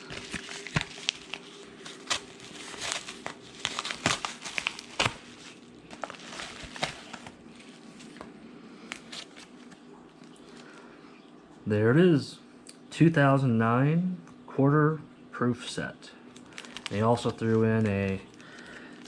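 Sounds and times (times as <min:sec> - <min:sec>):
packaging crinkling and rustling: 0:00.0 - 0:10.8, 0:16.3 - 0:19.0.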